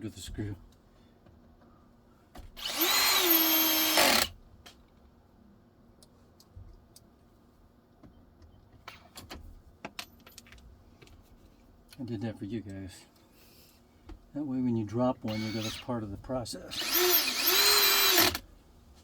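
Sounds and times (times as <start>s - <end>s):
cordless drill driving a screw: 2.6s - 4.3s, 15.3s - 15.9s, 16.7s - 18.4s.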